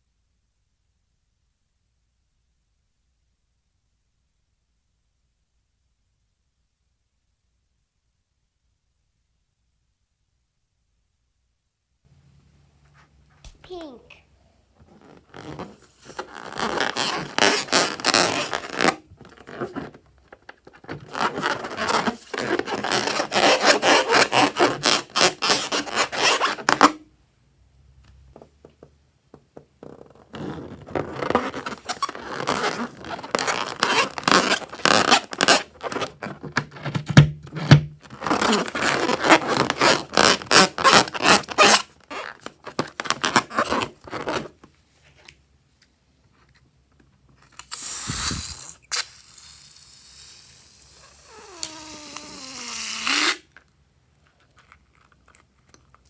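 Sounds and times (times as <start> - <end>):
slime crackling and scraping: 54.1 - 56.0.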